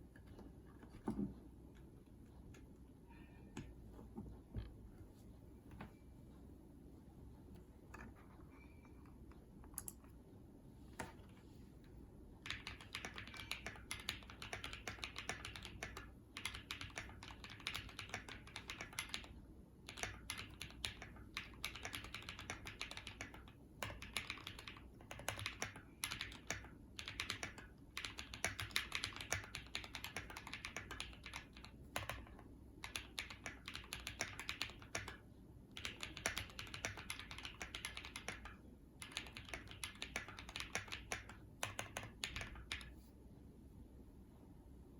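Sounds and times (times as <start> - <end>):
mechanical keyboard typing: 12.4 - 43.0.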